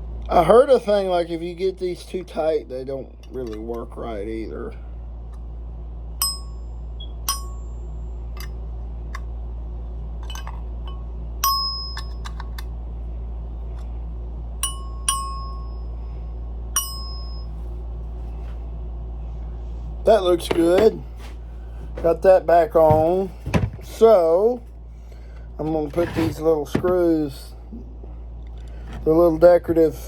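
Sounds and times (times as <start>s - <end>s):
steady low hum: 0.0s - 30.0s.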